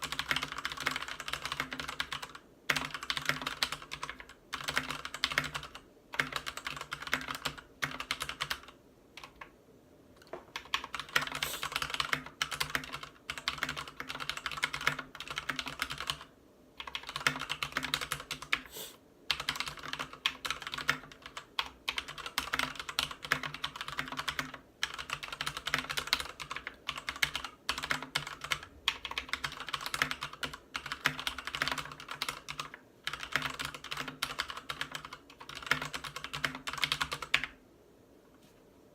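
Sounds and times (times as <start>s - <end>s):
mechanical keyboard typing: 0.0s - 9.5s, 10.2s - 18.7s, 19.3s - 37.6s.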